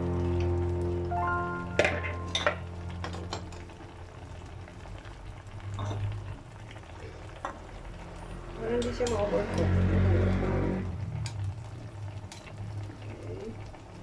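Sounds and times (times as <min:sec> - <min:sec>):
background music: 0:00.0 - 0:04.3.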